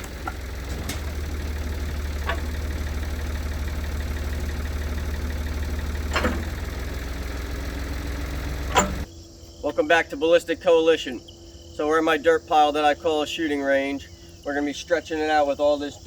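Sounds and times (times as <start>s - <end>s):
tractor engine droning: 0.0s - 11.0s.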